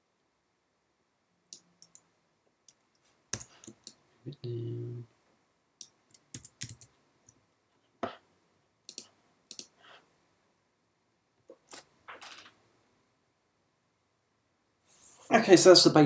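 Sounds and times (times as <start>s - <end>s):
mouse and keyboard clicks: 3.4s - 4.0s, 8.9s - 9.8s.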